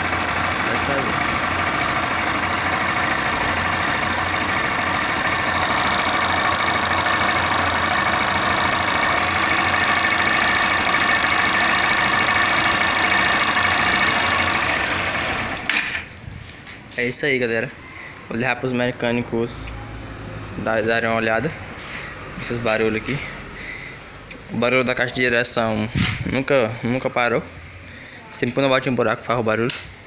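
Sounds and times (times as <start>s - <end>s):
motorcycle engine idling: 0.0s - 15.3s.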